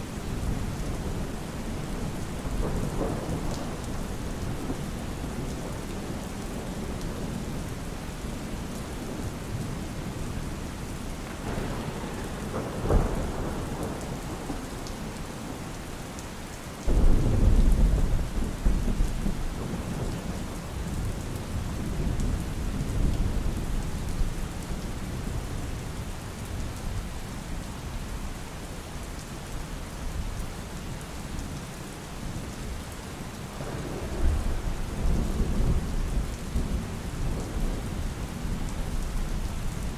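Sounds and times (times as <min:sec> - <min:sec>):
steady rain: 0:00.0 - 0:39.9
low thunder rumble: 0:16.9 - 0:24.3, 0:33.6 - 0:39.8.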